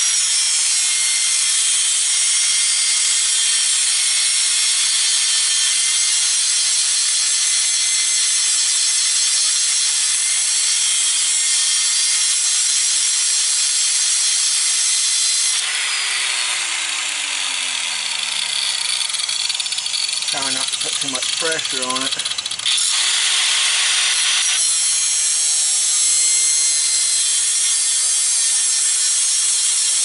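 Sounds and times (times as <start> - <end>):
cut-off wheel grinding metal: 0.0 - 30.0.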